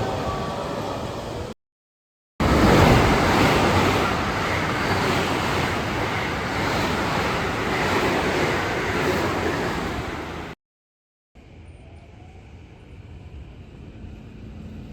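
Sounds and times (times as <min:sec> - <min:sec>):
train passing rumble: 0:02.4 - 0:10.6.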